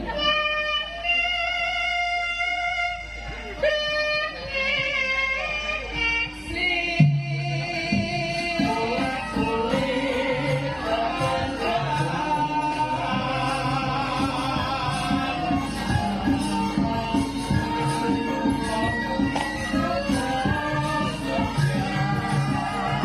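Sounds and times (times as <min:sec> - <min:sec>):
gamelan music: 0:05.4 - 0:23.0
woman singing: 0:05.4 - 0:23.0.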